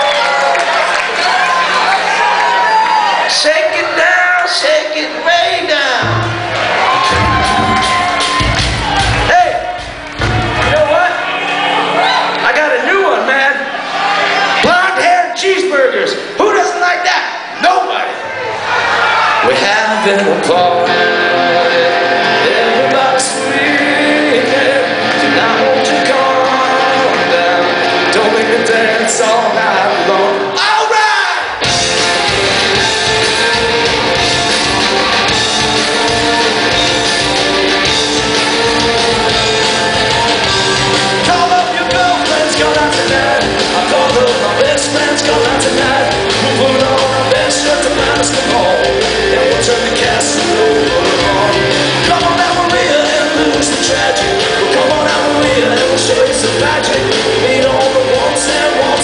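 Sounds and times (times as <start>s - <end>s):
rock band playing live: 0.0s - 17.5s, 18.6s - 59.0s
person singing: 19.5s - 30.6s, 32.0s - 59.0s.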